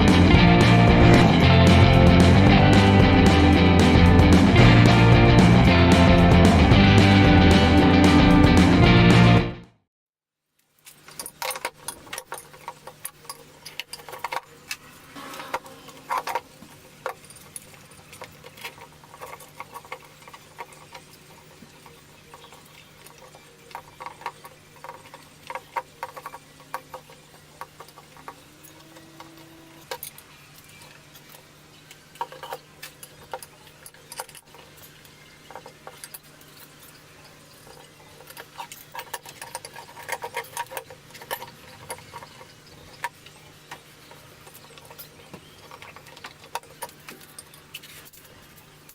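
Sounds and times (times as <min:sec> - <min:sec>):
steady low hum: 0:00.0 - 0:09.6
metal tools clinking and knocking: 0:10.9 - 0:14.6.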